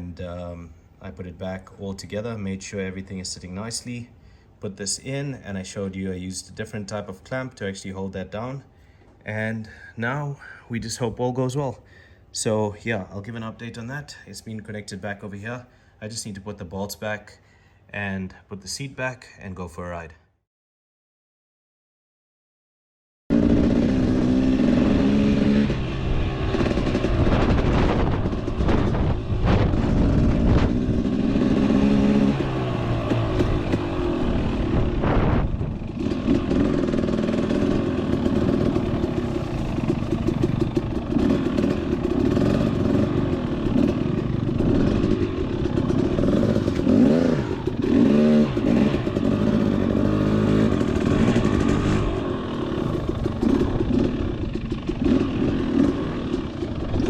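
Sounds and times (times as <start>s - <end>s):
dirt bike engine revving: 23.3s - 57.0s.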